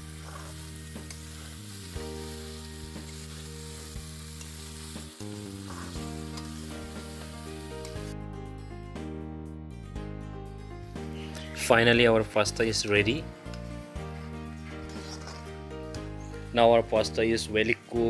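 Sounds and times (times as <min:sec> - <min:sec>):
pasta sizzling in a pan: 0:00.0 - 0:08.2, 0:10.9 - 0:16.4
background music: 0:00.0 - 0:18.0.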